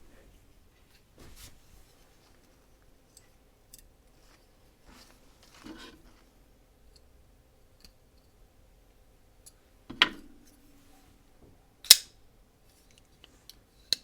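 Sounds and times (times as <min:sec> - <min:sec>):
knife blades snapping shut: 0:11.9 - 0:12.1.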